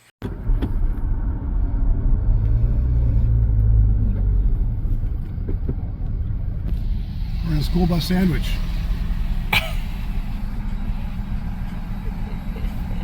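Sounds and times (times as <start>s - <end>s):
car interior road rumble: 0.2s - 13.0s.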